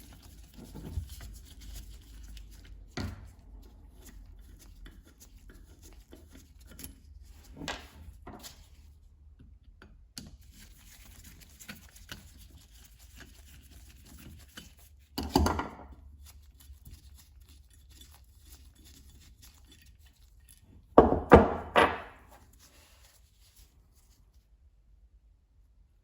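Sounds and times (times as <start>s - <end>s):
clattering knock: 21.0s - 22.3s
metal knocks on workbench: 21.0s - 22.3s.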